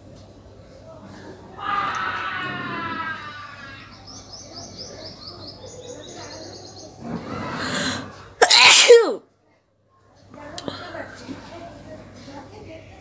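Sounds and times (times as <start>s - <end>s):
breathy intake of breath: 7.6s - 8.2s
woman sneezing: 8.4s - 9.2s.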